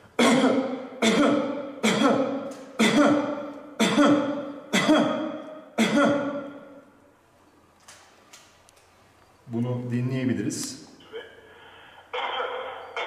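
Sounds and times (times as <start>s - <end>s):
person coughing: 0.1s - 6.6s, 11.0s - 11.5s, 12.1s - 13.0s.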